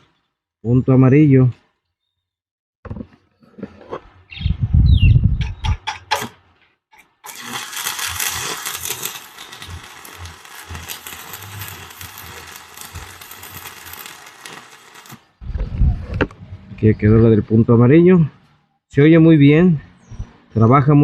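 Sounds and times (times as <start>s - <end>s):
sharp taps of welding rod: 5.5s - 6.4s, 7.2s - 15.2s
welding arc crackling: 7.0s - 15.4s.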